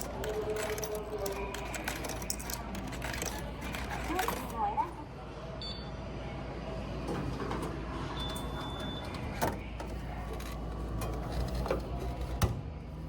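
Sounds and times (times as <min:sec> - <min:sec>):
low background hum: 0:00.0 - 0:13.0
vending machine mechanism clunks: 0:07.0 - 0:12.8.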